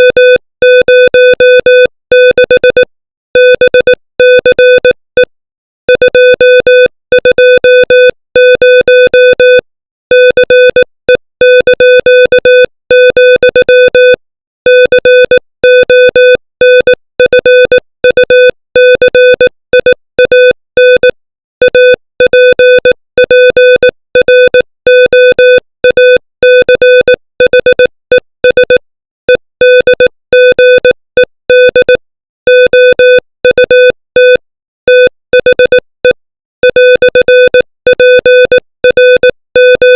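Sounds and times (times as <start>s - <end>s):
morse code tone: 0.0s - 5.3s, 5.9s - 39.9s.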